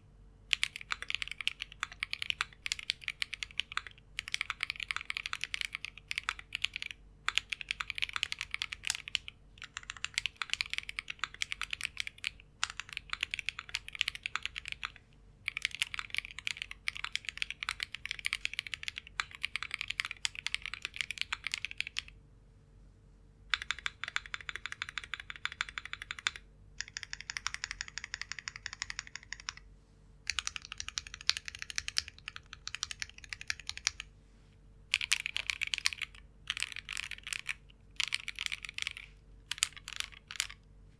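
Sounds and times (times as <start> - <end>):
mechanical keyboard typing: 0.5 - 22.1, 23.5 - 29.6, 30.3 - 34.1, 34.9 - 40.6.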